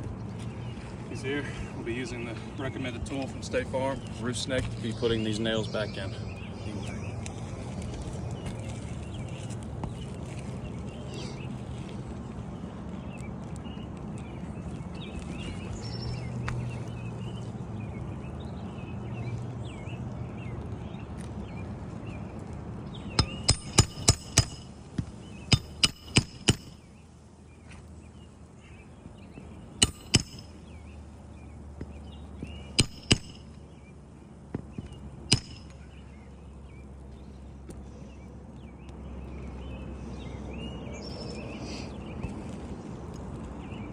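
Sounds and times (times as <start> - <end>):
birds chirping: 0.0 - 43.9
hammer tapping metal bar: 23.2 - 24.7, 25.5 - 26.8, 29.8 - 30.6, 32.8 - 33.5, 35.3 - 35.8.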